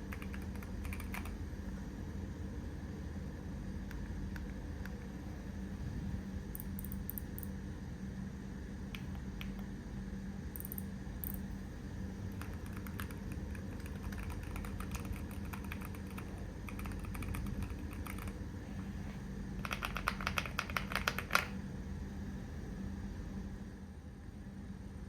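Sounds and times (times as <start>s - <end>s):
keyboard typing: 0.0s - 1.4s, 12.3s - 18.4s, 19.6s - 21.5s.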